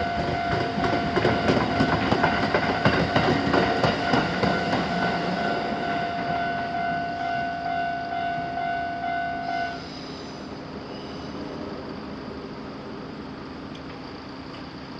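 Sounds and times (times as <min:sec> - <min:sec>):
railroad crossing bell ringing: 0:00.0 - 0:10.0.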